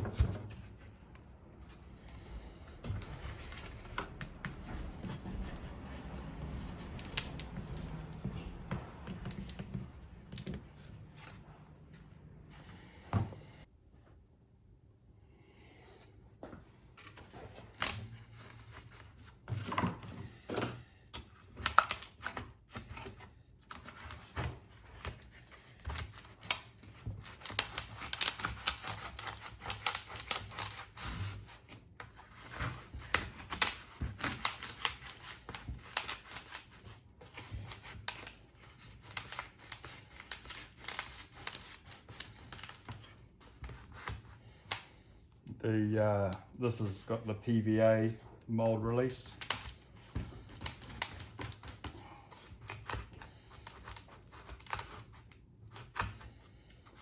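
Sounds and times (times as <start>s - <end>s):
plastic film crackling and tearing: 6.2s - 8.2s, 23.7s - 44.9s, 49.3s - 51.9s, 52.6s - 56.0s.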